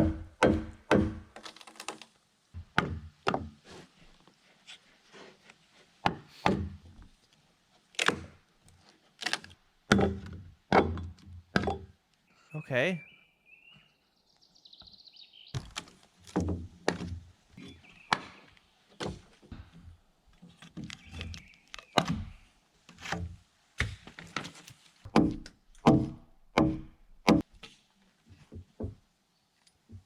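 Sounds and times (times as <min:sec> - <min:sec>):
tool chopping into log: 0:00.0 - 0:01.5, 0:06.1 - 0:06.8, 0:09.3 - 0:11.8, 0:25.1 - 0:27.5.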